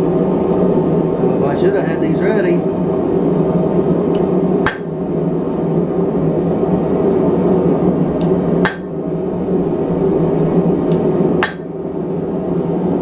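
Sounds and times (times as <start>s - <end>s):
steady hum: 0.0s - 13.0s
hammer blows on steel stamp: 4.7s - 5.0s, 8.6s - 9.2s, 11.4s - 11.9s.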